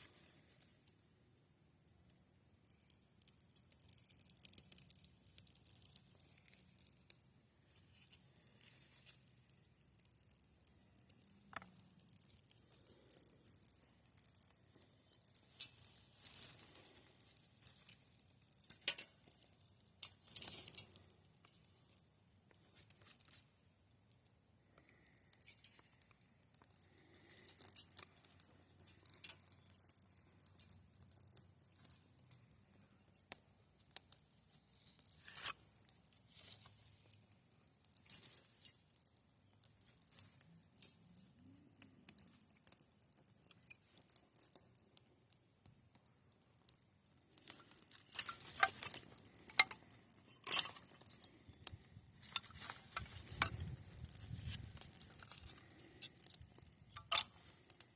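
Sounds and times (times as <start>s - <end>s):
campfire crackling and popping: 0.0s - 57.9s.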